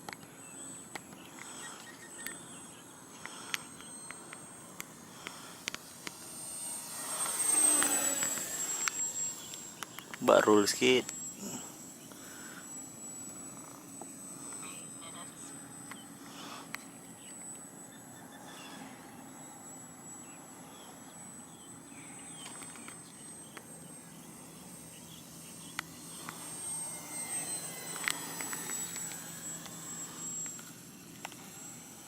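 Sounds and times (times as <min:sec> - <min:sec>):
sharp clicks: 0:00.0 - 0:14.6, 0:22.3 - 0:31.7
model jet high whine: 0:00.0 - 0:32.0.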